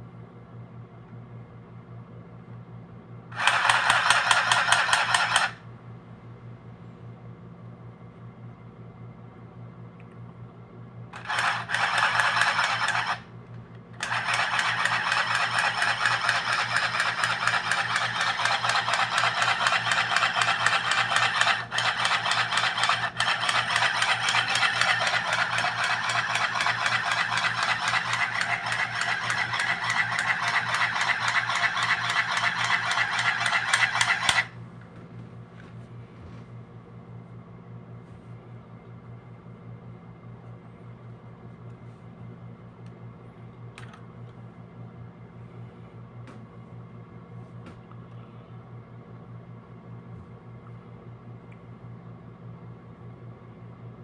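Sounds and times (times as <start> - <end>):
sewing machine stitching: 3.3 - 5.6, 11.2 - 13.3, 14.0 - 34.5.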